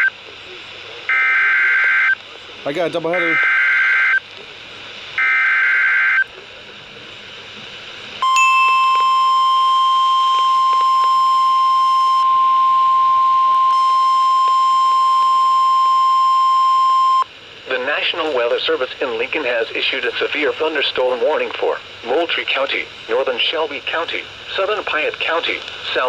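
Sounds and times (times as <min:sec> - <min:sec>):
steady alarm tone: 0:08.2 - 0:17.3.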